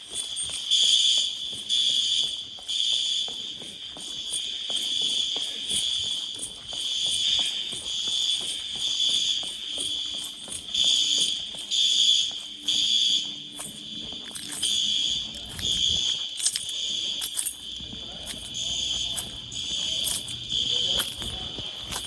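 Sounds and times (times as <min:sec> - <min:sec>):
high-pitched fire alarm tone: 0:00.0 - 0:22.0.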